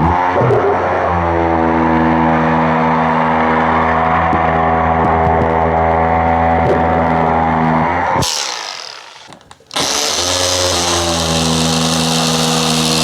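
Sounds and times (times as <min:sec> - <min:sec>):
power tool motor running: 0:08.2 - 0:13.0.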